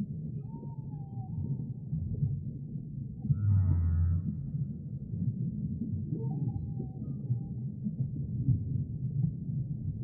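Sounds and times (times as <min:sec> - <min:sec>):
continuous low rumble: 0:01.3 - 0:10.0
whale deep low moan: 0:03.1 - 0:04.9, 0:06.0 - 0:07.9.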